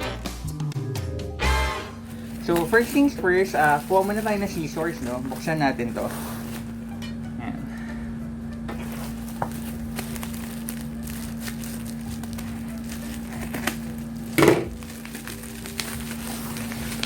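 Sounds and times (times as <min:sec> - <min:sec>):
packaging crinkling: 0:02.1 - 0:06.8, 0:08.8 - 0:17.0.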